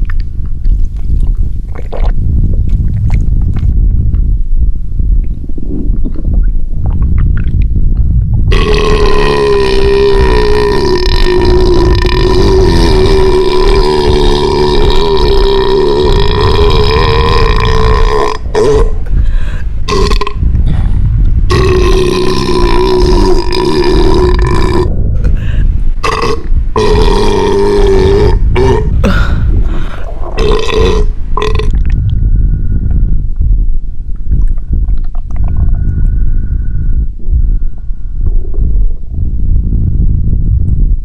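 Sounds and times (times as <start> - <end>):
person burping loudly: 8.5 - 20.8, 21.5 - 32.0.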